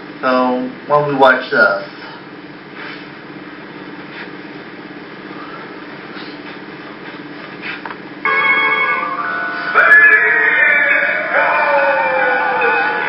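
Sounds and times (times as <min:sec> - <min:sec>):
steady low hum: 0:00.0 - 0:13.0
music: 0:08.3 - 0:13.0.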